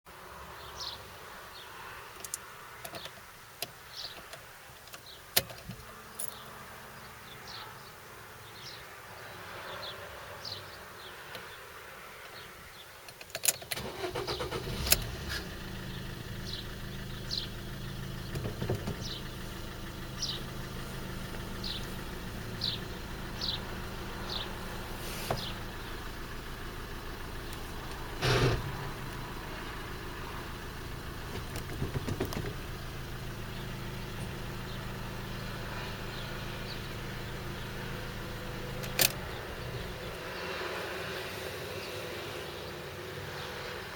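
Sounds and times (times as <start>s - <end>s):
diesel engine cranking and idling: 13.2s - 43.9s.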